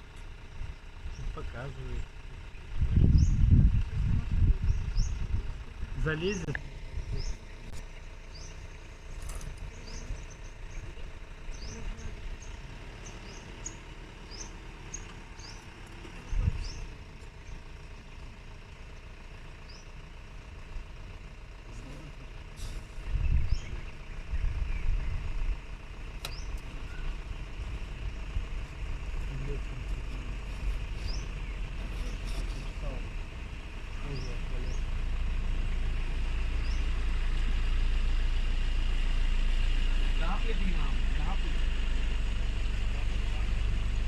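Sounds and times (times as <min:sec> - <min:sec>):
jeep engine idling: 0:00.0 - 0:44.0
small bird chirping: 0:00.1 - 0:18.3, 0:18.9 - 0:20.0, 0:22.6 - 0:38.3.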